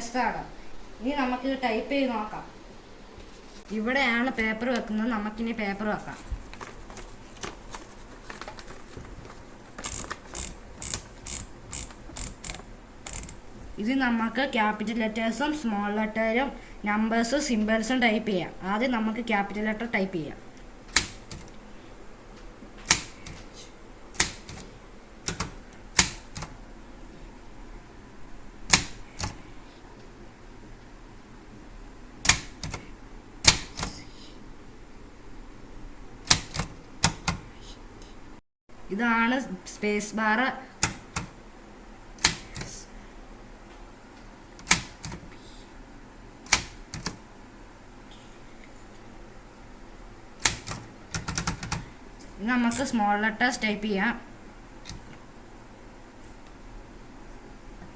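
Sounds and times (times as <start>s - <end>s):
typewriter keys clacking: 6.6s - 13.4s, 24.2s - 24.7s, 25.3s - 26.5s, 50.4s - 51.8s
light typewriter click: 20.9s - 21.5s, 22.8s - 23.5s, 24.2s - 24.7s, 25.3s - 26.5s, 32.2s - 32.8s, 44.6s - 45.2s, 46.5s - 47.2s, 50.4s - 51.8s
typewriter key strikes: 20.9s - 21.5s, 24.2s - 24.7s, 25.3s - 26.5s, 32.3s - 32.8s, 44.6s - 45.2s.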